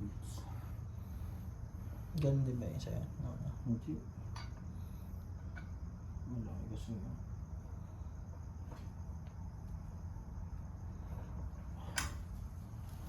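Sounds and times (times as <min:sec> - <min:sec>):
crickets chirring: 0:00.0 - 0:13.0
low background hum: 0:00.0 - 0:13.0
sharp click: 0:11.9 - 0:12.2.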